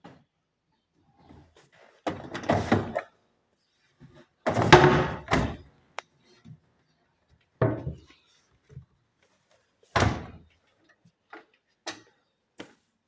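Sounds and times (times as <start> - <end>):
plastic bumps and thunks: 4.5 - 5.6.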